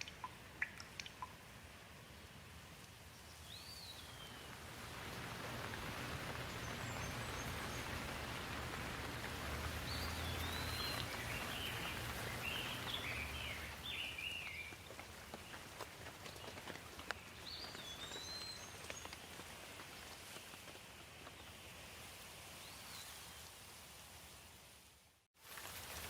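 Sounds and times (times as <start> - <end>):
steady rain hiss: 0.0 - 26.0
birds chirping: 3.3 - 20.1.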